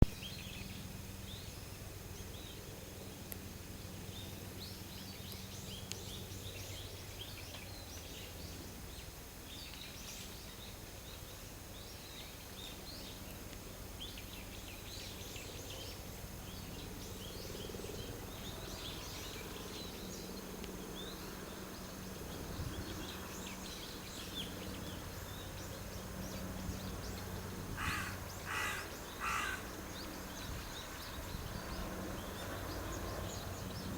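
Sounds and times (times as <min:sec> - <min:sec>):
steady low hum: 0:00.1 - 0:33.9
small birds chirping: 0:03.2 - 0:33.9
larger bird harsh calls: 0:27.8 - 0:29.7.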